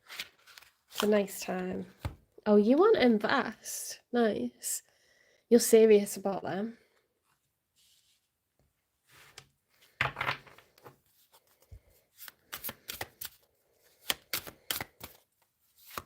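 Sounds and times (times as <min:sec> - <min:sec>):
cards rustling: 0:10.6 - 0:16.0.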